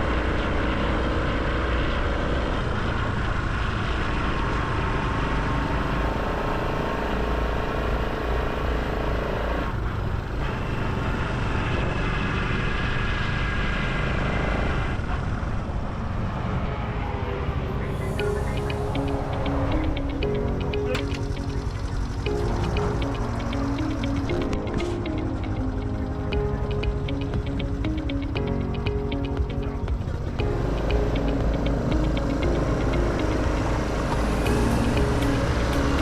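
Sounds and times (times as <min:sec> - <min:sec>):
motorcycle engine running: 0:18.1 - 0:36.0.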